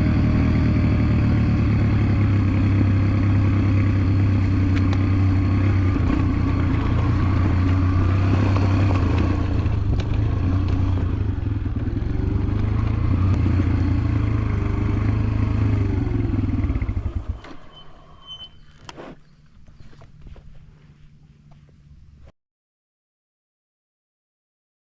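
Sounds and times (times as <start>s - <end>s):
motorcycle engine running: 0.0s - 18.9s.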